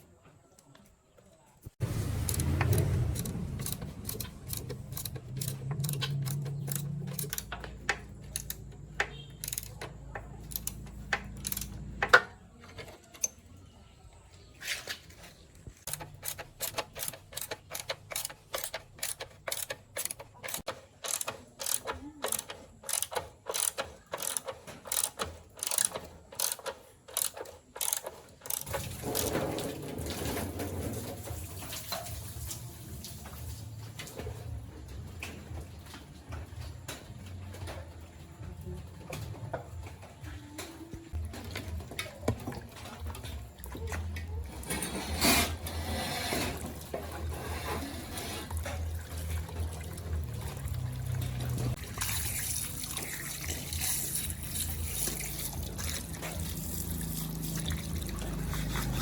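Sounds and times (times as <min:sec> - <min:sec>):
sharp metallic clicks: 0:01.8 - 0:13.4, 0:15.8 - 0:29.3.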